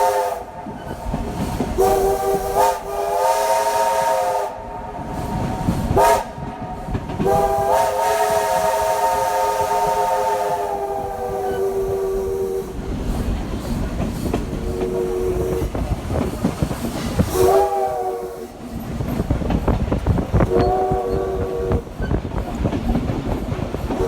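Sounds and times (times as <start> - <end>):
steam locomotive whistle blasts: 0.0 - 12.8, 14.6 - 15.8, 17.3 - 18.6, 20.4 - 22.0
train wheels clickety-clack: 0.0 - 24.0.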